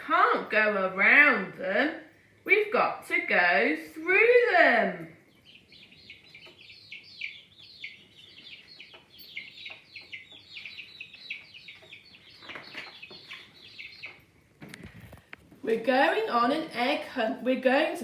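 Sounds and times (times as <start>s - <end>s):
baby chicks cheeping: 5.2s - 15.3s.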